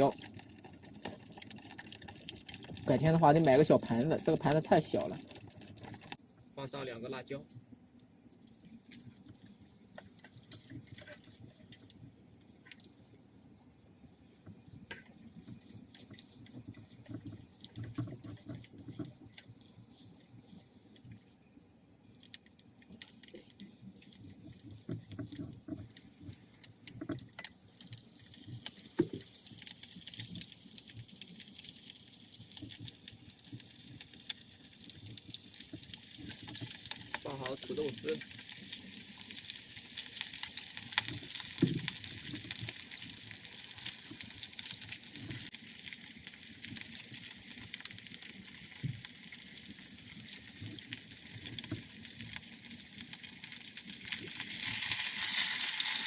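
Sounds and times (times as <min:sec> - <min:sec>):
food frying in oil: 0:00.0 - 0:56.0
oil crackles and pops: 0:00.0 - 0:56.0.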